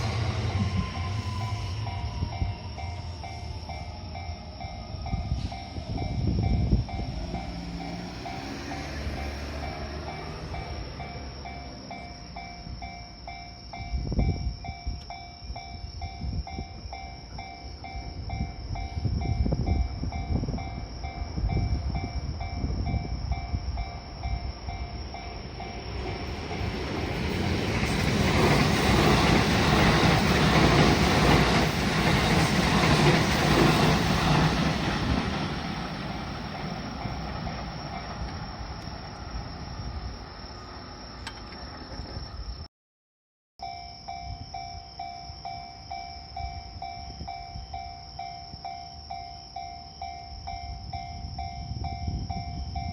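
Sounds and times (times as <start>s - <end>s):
crossing alarm two-tone clang: 0.0s - 26.6s, 43.6s - 52.9s
passing train rumble: 0.0s - 42.7s, 44.1s - 52.9s.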